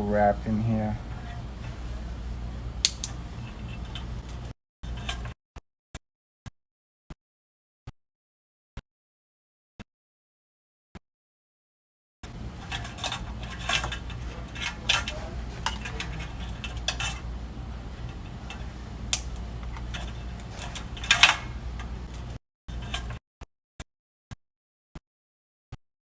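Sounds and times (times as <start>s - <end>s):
low steady hum: 0.0s - 5.3s, 12.3s - 23.1s
metal parts clinking and scraping: 3.3s - 5.3s, 12.3s - 23.2s.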